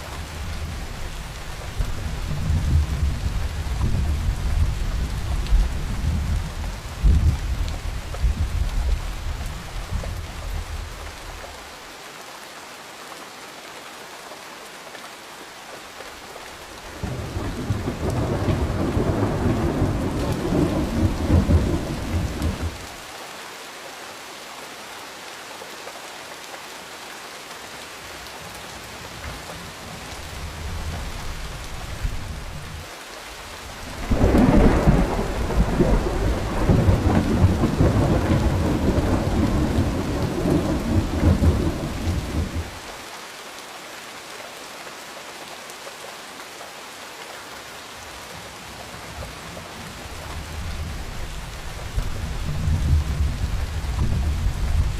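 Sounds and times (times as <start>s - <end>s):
steady rain: 0.0s - 54.9s
thunder rolling: 17.0s - 22.8s, 33.9s - 42.8s.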